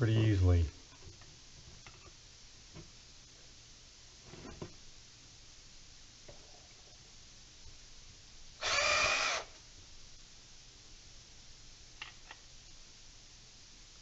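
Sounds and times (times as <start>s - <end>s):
power drill backing out screw: 8.6s - 9.5s.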